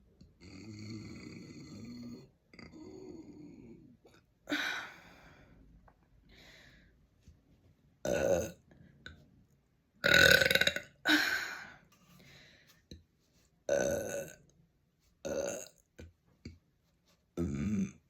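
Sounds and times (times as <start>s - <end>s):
person burping: 0.4s - 3.6s, 8.0s - 8.6s, 10.0s - 11.6s, 13.7s - 14.4s, 15.2s - 15.9s, 17.4s - 18.0s.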